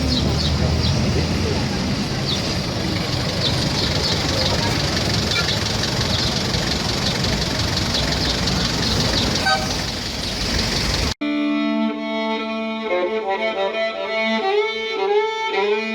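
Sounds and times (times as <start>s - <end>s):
violin music: 11.2s - 15.9s.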